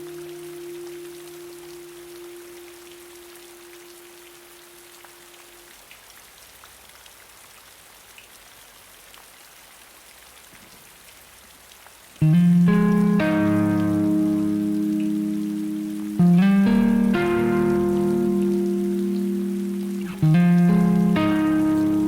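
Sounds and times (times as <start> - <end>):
steady rain: 0.0 - 22.0
held guitar note: 12.2 - 22.0
loud guitar chord: 12.2 - 22.0.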